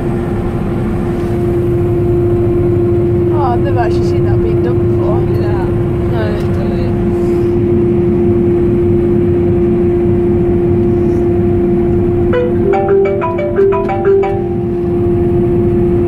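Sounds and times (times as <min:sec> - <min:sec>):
combine harvester hum: 0:00.0 - 0:16.0
chiming tune: 0:12.3 - 0:15.0.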